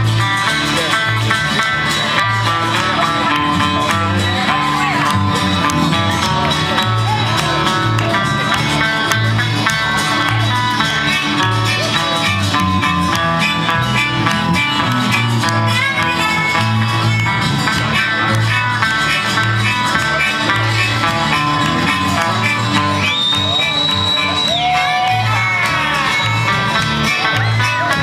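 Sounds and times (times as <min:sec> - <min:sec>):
country folk band instrumental: 0:00.0 - 0:28.0
guitars: 0:00.0 - 0:28.0
pulsing bass: 0:00.0 - 0:28.0.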